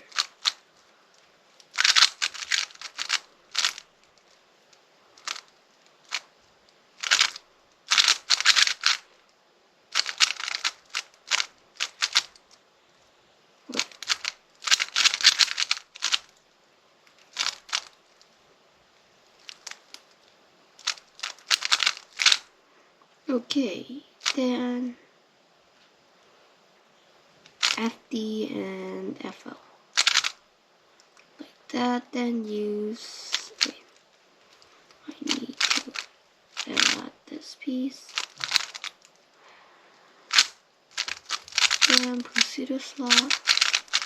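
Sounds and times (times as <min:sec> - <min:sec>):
speed cube clicking: 0:00.0 - 0:00.6, 0:01.6 - 0:03.9, 0:05.2 - 0:06.3, 0:07.0 - 0:09.1, 0:09.9 - 0:12.5, 0:13.7 - 0:16.4, 0:17.2 - 0:18.0, 0:19.4 - 0:20.1, 0:20.8 - 0:22.5, 0:24.2 - 0:24.4, 0:27.6 - 0:27.8, 0:30.0 - 0:30.4, 0:33.3 - 0:33.8, 0:35.1 - 0:37.0, 0:38.0 - 0:39.1, 0:40.3 - 0:44.0.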